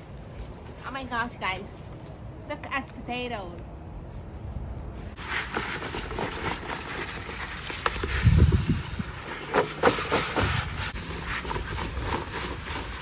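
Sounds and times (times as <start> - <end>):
potatoes and soil rustling: 5.1 - 13.0.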